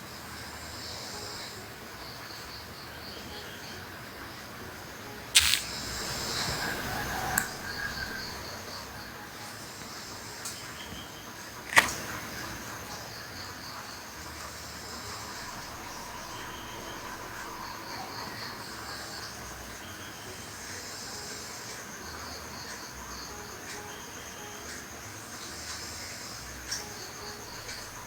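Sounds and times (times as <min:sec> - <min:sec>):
insects chirping: 0:00.0 - 0:28.0
low hiss: 0:00.0 - 0:28.0
sharp click: 0:05.4 - 0:06.0, 0:11.7 - 0:12.1.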